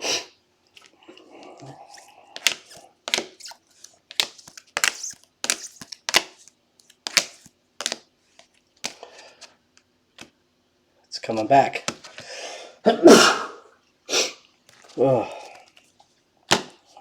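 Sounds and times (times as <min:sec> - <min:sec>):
trading cards clicking and rustling: 0:01.9 - 0:09.5.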